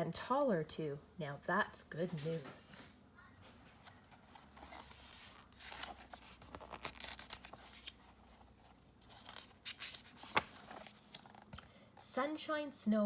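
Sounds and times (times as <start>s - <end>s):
book pages turning: 3.4s - 11.7s.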